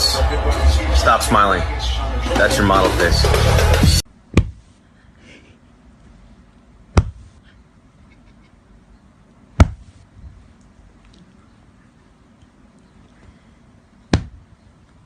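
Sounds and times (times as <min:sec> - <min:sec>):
sharp single knocks: 0:04.3 - 0:04.6, 0:07.0 - 0:07.3, 0:09.6 - 0:09.9, 0:14.1 - 0:14.4.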